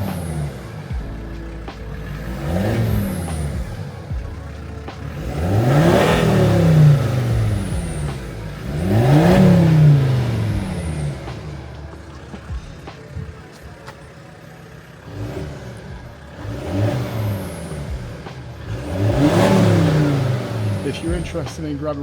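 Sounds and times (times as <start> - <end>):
diesel car engine revving: 0.0 - 22.0.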